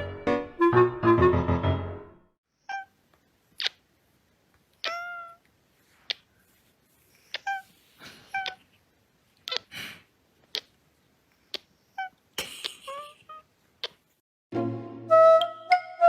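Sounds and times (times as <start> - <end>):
cat chirping meows: 2.6 - 3.0, 3.6 - 3.8, 4.8 - 5.4, 7.2 - 8.7, 9.4 - 9.7, 10.5 - 10.8, 11.5 - 12.2
short breathy puffs: 9.4 - 10.7.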